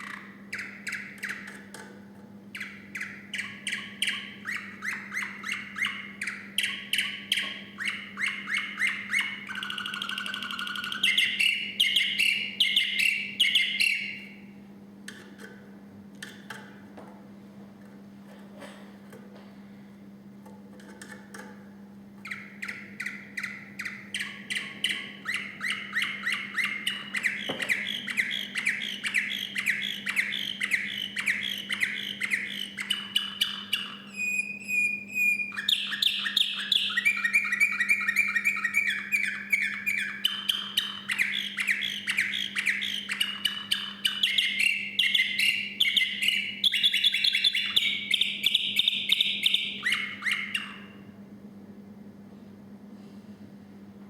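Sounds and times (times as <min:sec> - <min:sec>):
canary singing: 0:00.0 - 0:01.8, 0:02.5 - 0:14.5, 0:22.2 - 0:51.2
steady low hum: 0:00.0 - 0:54.0.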